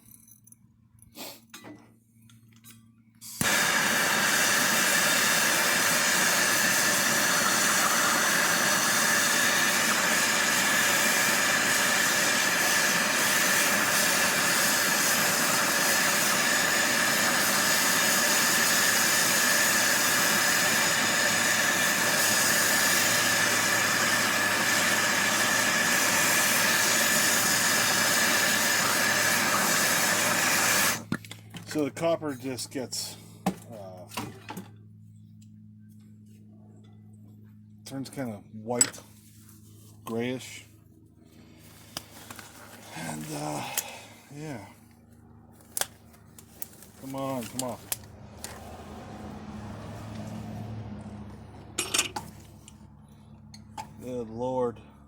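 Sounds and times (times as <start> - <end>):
gas torch hissing: 3.2 - 31.1.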